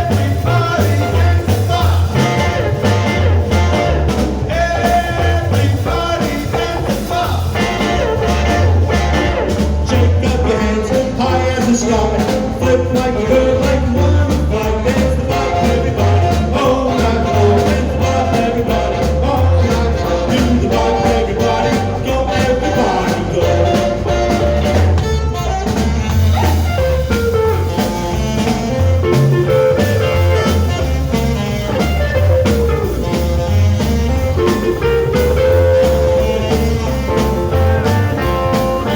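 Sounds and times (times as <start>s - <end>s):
person singing: 0.0s - 25.6s
live rock and roll band: 0.0s - 38.9s.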